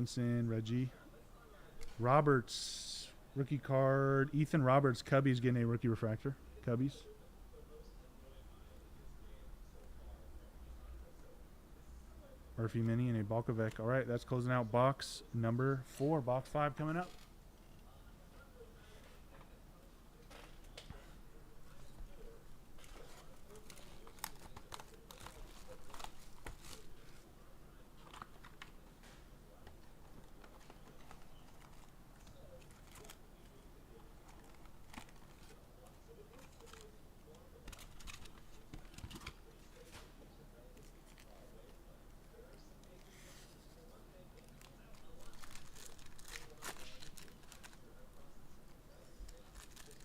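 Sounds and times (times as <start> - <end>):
card pack wrappers crinkling: 22.8 - 27.0, 30.2 - 33.2, 34.2 - 35.6, 44.4 - 48.1, 49.2 - 50.0
wrapper tearing and crinkling: 44.4 - 47.9, 49.3 - 50.0.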